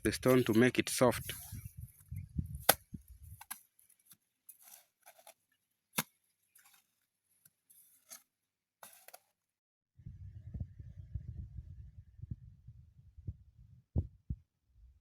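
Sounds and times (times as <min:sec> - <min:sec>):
trowel scraping plaster on stone: 0:00.2 - 0:01.6.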